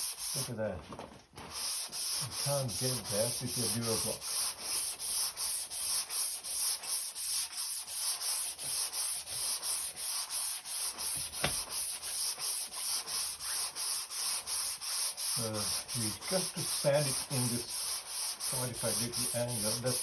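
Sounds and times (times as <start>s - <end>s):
hand sanding rasping strokes: 0.0s - 0.7s, 1.4s - 20.0s
sharp tap: 11.2s - 11.6s.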